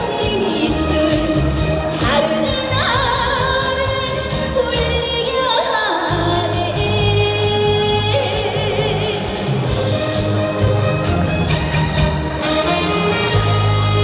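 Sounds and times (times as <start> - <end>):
woman singing with vibrato: 0.0 - 10.4
backing track music: 0.0 - 14.0.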